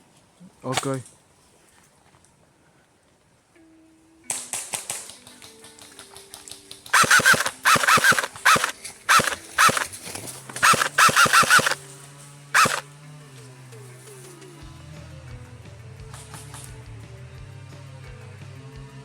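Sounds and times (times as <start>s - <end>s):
sharp clicks: 4.6s - 11.8s, 12.6s - 12.8s.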